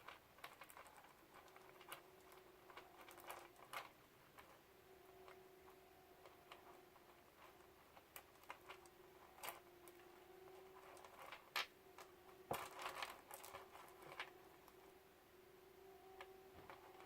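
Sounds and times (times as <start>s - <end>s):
faint steady hum: 0.0s - 17.0s
bracelet beads clicking together: 0.1s - 4.5s.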